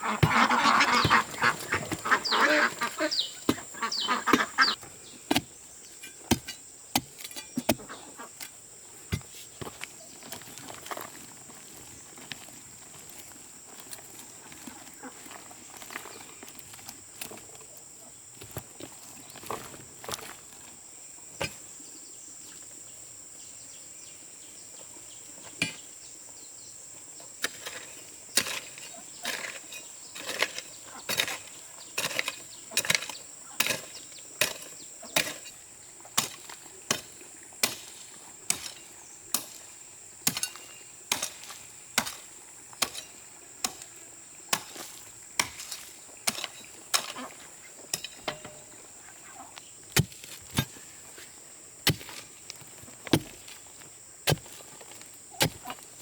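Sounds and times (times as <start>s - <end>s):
hand tool chopping: 0.0s - 11.0s, 27.4s - 35.6s, 36.2s - 43.9s, 44.5s - 47.3s, 47.9s - 48.6s, 49.9s - 50.8s, 51.8s - 53.6s, 54.2s - 56.0s
insects droning: 0.0s - 56.0s.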